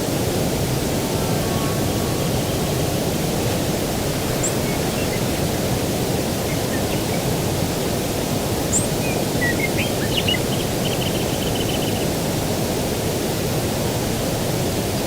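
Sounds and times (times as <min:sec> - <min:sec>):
low rushing countryside noise: 0:00.0 - 0:14.7
songbird chirps: 0:08.6 - 0:12.0.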